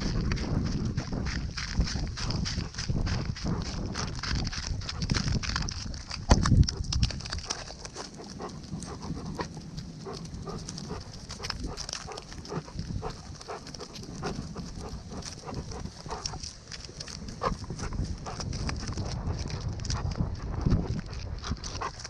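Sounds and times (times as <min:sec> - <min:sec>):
dog footfalls on forest floor: 0:00.0 - 0:22.0.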